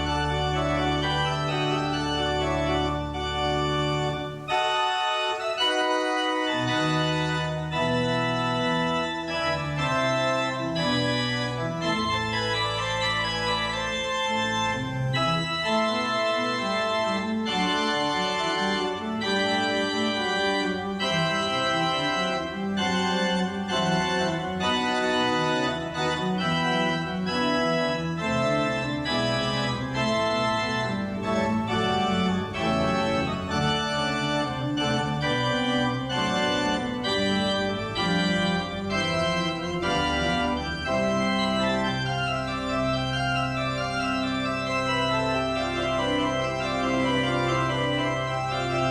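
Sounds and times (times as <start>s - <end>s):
organ playing held chords: 0.0s - 48.9s.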